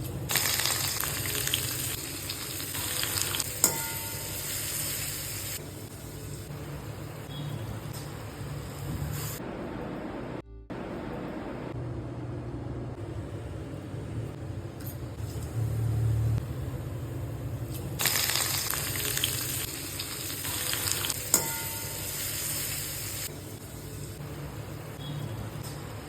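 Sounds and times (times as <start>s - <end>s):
food sizzling in hot oil: 0.2s - 6.5s, 18.0s - 24.2s.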